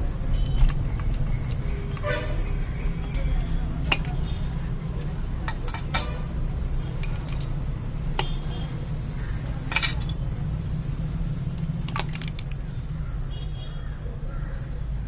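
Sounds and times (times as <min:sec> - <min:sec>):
light metallic clinks and taps: 0:06.9 - 0:07.6, 0:09.7 - 0:10.2.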